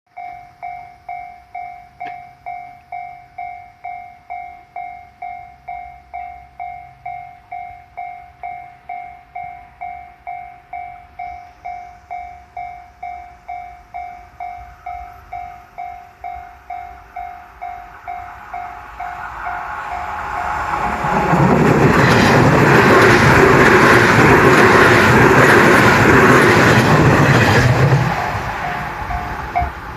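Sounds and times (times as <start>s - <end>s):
level crossing warning bell: 0.1s - 21.5s, 28.2s - 29.9s
train rushing past: 11.1s - 29.9s.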